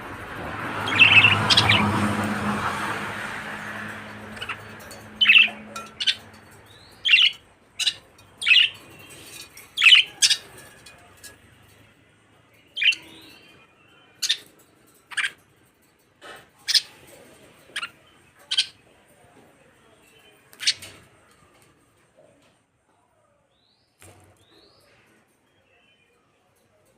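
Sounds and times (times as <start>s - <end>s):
budgerigars chirping: 0.9s - 1.8s, 4.2s - 10.6s.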